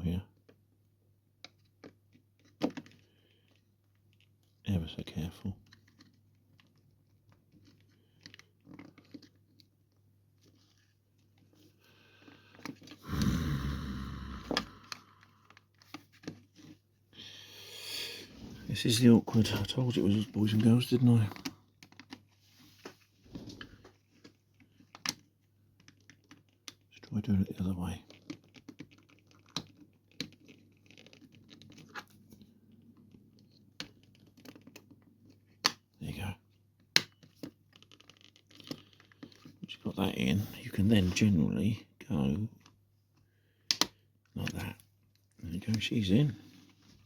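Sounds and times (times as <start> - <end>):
faint sharp plastic clicks: 42.6 - 45.9.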